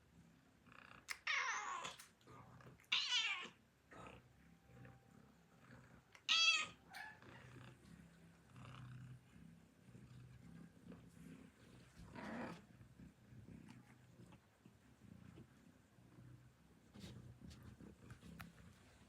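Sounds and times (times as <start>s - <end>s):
cat meowing: 1.1s - 2.0s, 2.9s - 3.6s, 6.2s - 7.4s.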